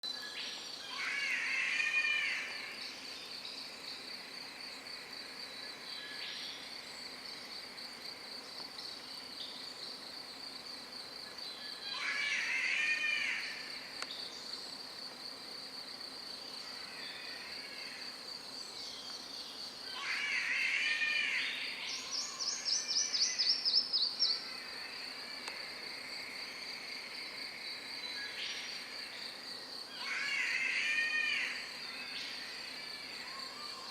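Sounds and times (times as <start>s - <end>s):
high insect drone: 0.1s - 33.9s
animal calls: 29.9s - 32.4s.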